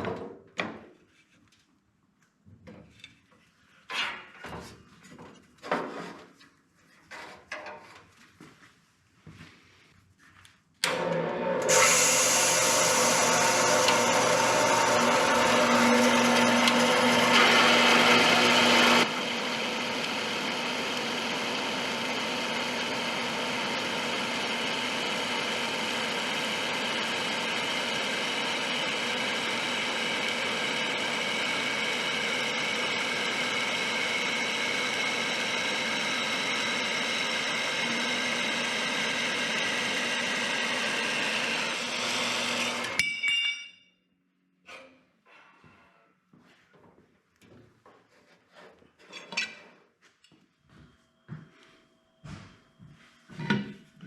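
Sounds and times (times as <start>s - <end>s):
power tool running: 10.8s - 43.0s.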